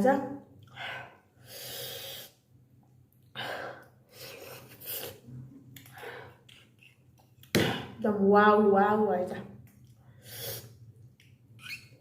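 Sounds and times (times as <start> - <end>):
person slurping noodle soup: 4.2 - 5.5, 10.2 - 10.8.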